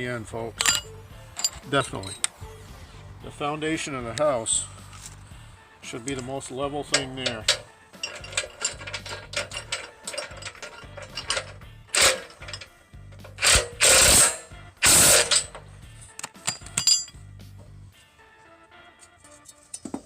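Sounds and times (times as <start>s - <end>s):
hand tools clanking on metal: 0.5s - 2.4s, 6.0s - 17.3s, 19.0s - 20.0s
ratchet wrench ratcheting: 0.6s - 2.2s, 6.9s - 15.7s, 16.3s - 17.1s.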